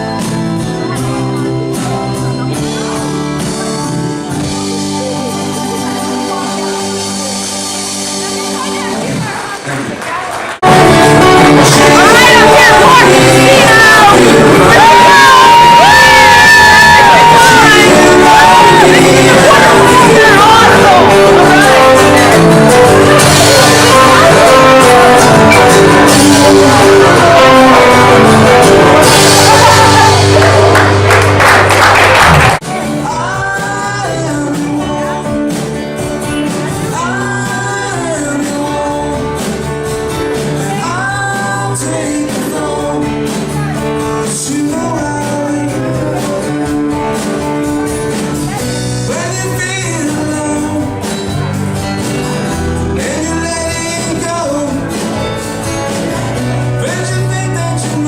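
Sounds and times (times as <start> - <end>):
live rock band playing: 0.0 - 10.0, 10.6 - 58.0
person singing: 10.6 - 31.2, 32.3 - 47.0, 48.4 - 51.5, 52.8 - 55.2, 56.7 - 58.0.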